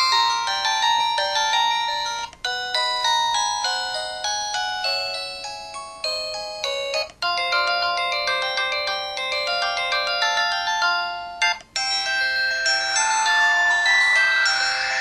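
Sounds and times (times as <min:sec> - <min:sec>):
chiming synthesized ringtone: 0:00.0 - 0:15.0.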